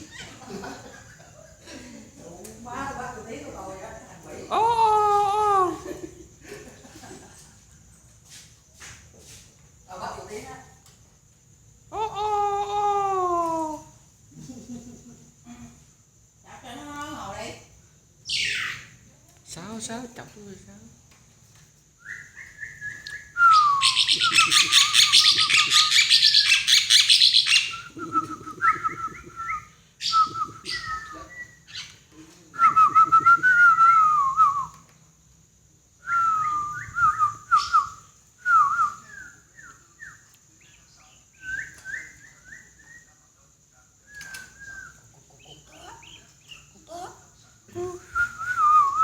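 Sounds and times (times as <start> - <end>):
sliding whistled bird notes: 22.0 - 32.0, 36.0 - 43.2, 44.0 - 45.1, 48.1 - 49.0.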